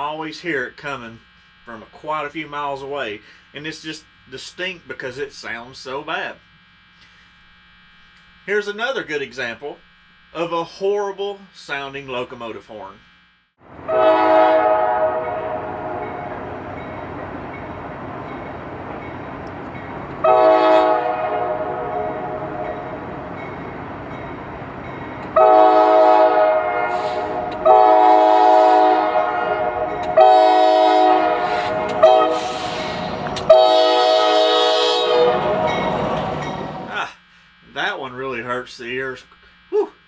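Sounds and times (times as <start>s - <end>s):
train rumble: 13.6s - 37.0s
locomotive air horn blasts: 13.7s - 17.2s, 19.5s - 37.0s.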